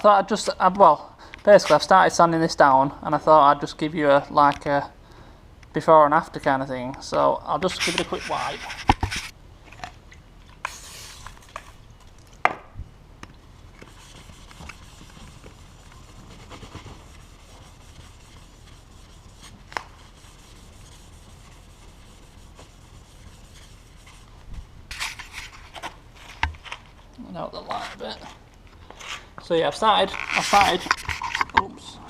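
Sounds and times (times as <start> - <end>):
cloth rubbing on plastic bumper: 13.8 - 25.6.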